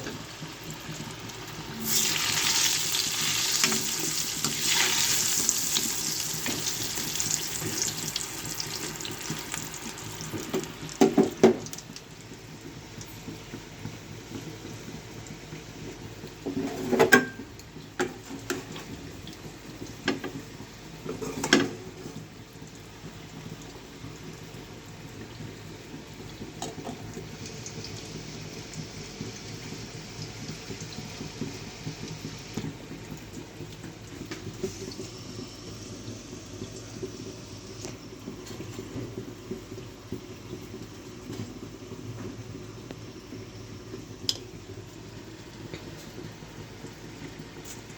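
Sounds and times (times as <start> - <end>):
cooking hiss: 0.0 - 17.0, 25.4 - 41.7, 42.9 - 47.9.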